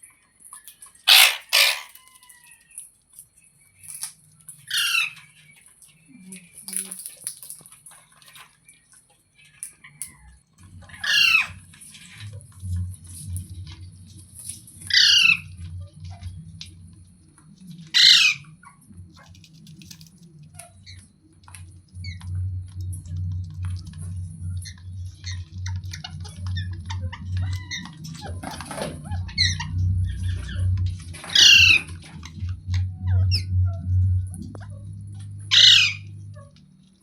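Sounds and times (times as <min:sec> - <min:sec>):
parrot squawking: 0:01.1 - 0:02.1, 0:04.7 - 0:05.2, 0:11.0 - 0:11.6, 0:14.9 - 0:15.5, 0:17.9 - 0:18.5, 0:25.3 - 0:31.9, 0:35.5 - 0:36.5
low steady hum: 0:03.4 - 0:37.0.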